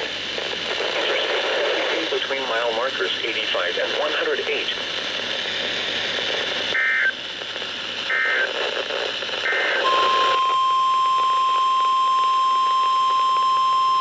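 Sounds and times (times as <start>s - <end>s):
screeching data tone bursts: 9.5s - 14.0s.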